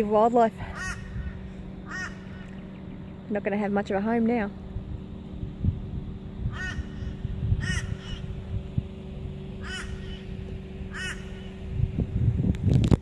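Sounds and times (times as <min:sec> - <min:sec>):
steady low hum: 0:00.0 - 0:13.0
crow cawing: 0:00.6 - 0:02.6, 0:06.5 - 0:08.3, 0:09.6 - 0:11.6.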